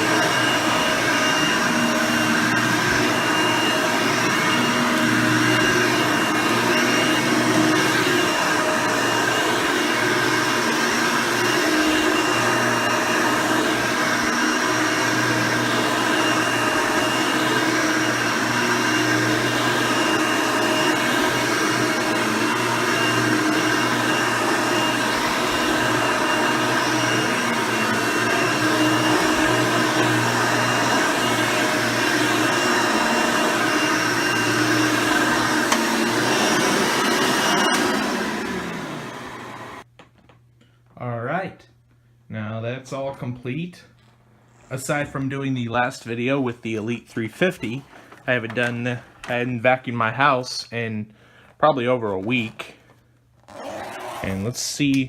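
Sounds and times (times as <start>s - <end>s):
vacuum cleaner motor hum: 0.0s - 39.9s, 53.4s - 54.5s.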